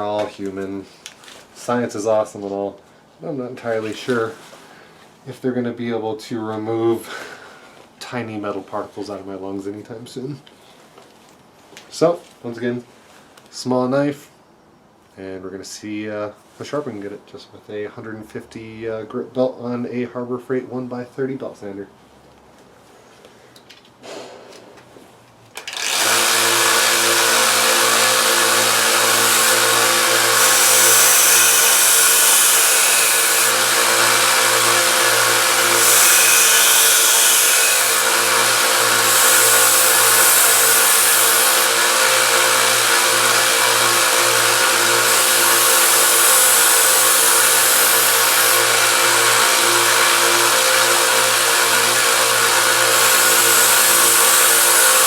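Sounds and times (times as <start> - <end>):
belt sander humming: 25.6 - 55.0
knife grinding on sanding belt: 25.8 - 55.0.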